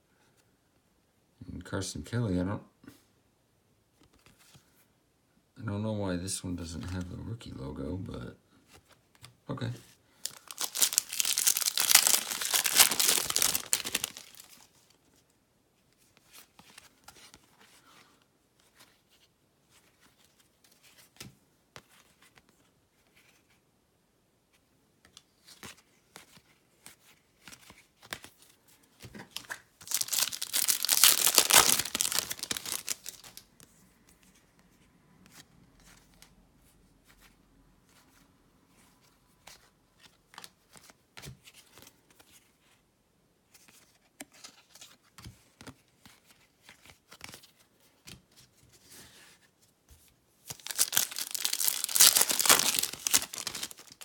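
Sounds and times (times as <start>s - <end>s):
wrappers ripping and crinkling: 10.2s - 14.7s, 29.4s - 33.4s, 50.5s - 54.0s.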